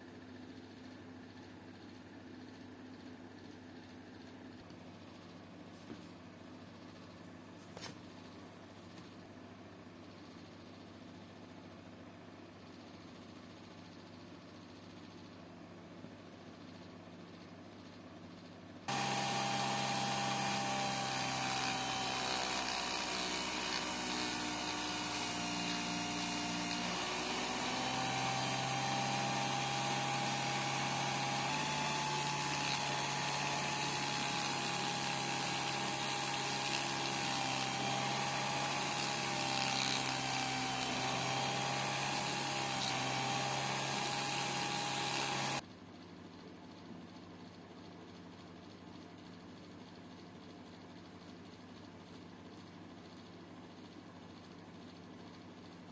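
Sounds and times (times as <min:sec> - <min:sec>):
electric machine humming and whining: 0:18.9 - 0:45.6.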